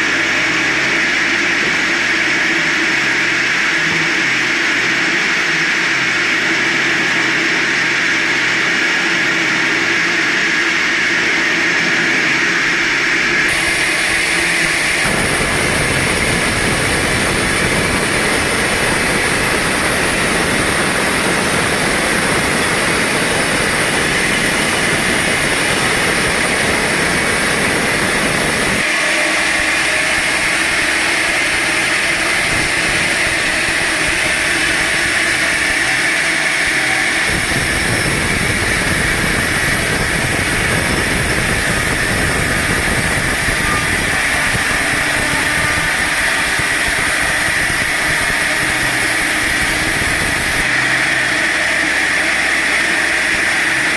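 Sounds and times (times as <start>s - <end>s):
sawmill whining: 0.0s - 53.9s.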